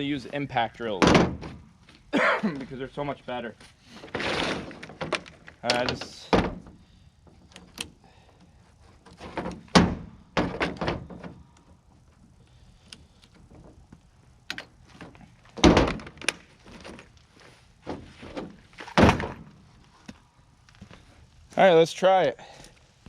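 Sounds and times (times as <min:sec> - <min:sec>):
heavy metal clunks and knocks: 0:01.0 - 0:01.7, 0:04.1 - 0:06.8, 0:09.1 - 0:11.5, 0:15.0 - 0:16.3, 0:17.8 - 0:19.6.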